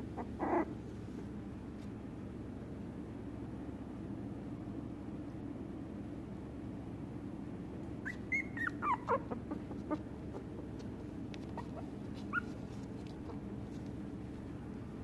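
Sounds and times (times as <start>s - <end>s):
puppy whimpering: 0.0s - 0.7s, 8.0s - 10.8s, 11.4s - 13.5s.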